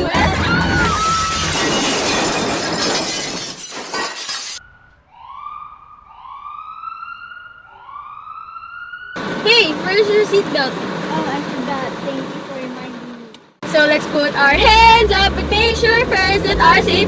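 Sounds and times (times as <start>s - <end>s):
glass shattering crash: 0.0s - 4.6s
emergency vehicle siren: 4.6s - 11.7s, 14.5s - 17.0s.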